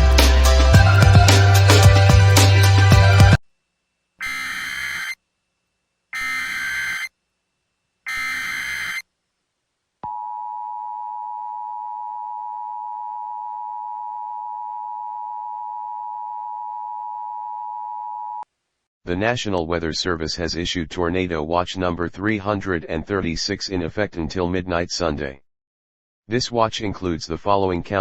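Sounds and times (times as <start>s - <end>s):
dual-tone alert signal: 4.2s - 5.2s, 6.2s - 7.1s, 8.1s - 9.0s
screechy data bursts: 4.2s - 5.2s, 6.1s - 7.1s, 8.1s - 9.0s.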